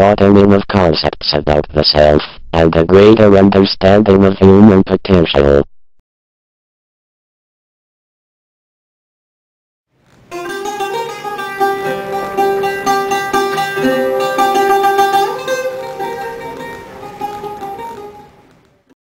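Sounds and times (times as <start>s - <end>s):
plucked guitar music: 10.3s - 18.5s.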